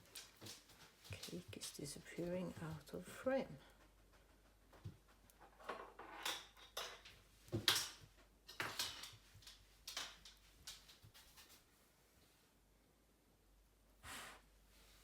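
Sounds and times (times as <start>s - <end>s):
kitchen molds clattering and scraping: 5.3s - 9.4s.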